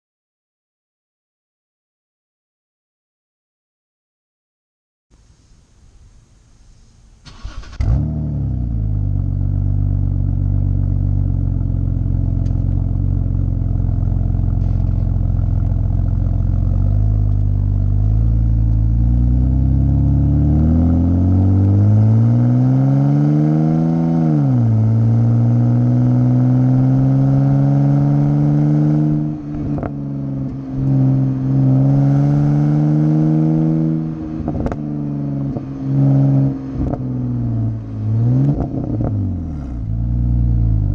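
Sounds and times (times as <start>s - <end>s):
exhaust crackles: 5.2s - 22.6s
car exhaust engine drone: 5.2s - 40.9s.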